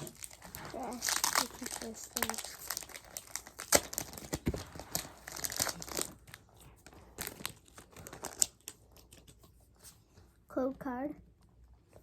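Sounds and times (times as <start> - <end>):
foil wrapper crinkling and tearing: 0.0 - 9.4.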